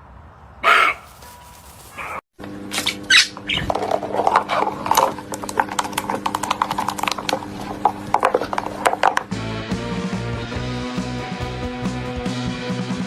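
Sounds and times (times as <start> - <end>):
small animal high calls: 0.6 - 1.2, 1.8 - 2.2, 3.1 - 3.6.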